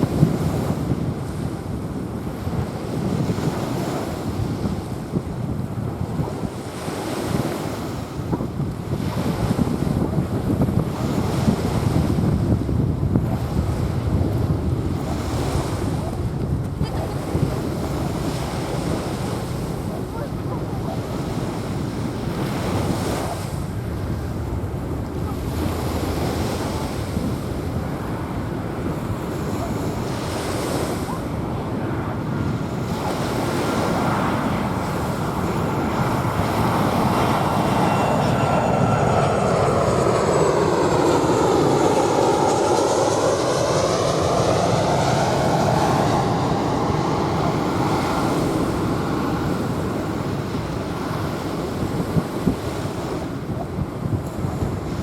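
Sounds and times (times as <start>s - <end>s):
waves washing on sand: 0.0s - 12.1s, 25.4s - 38.3s
jet airliner passing overhead: 0.0s - 55.0s
wind on microphone: 0.0s - 55.0s.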